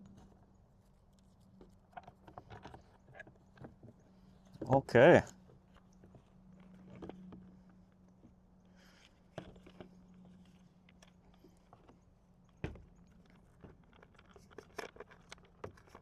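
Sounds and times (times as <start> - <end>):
low steady hum: 0.0 - 16.0
plastic clicks and scrapes: 13.1 - 16.0.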